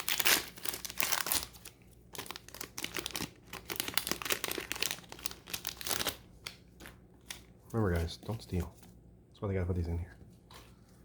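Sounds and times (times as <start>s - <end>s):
wrapper tearing and crinkling: 0.0s - 7.5s.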